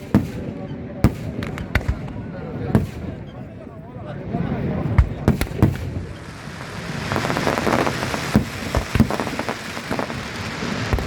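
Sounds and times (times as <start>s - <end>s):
fireworks bangs: 0.0s - 11.0s
fireworks crackle: 1.1s - 3.4s, 4.6s - 11.0s.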